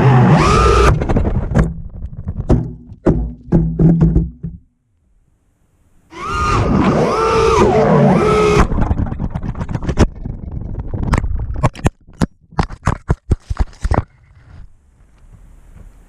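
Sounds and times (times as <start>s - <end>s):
quadcopter motors whining: 0.0s - 0.9s, 6.1s - 8.7s.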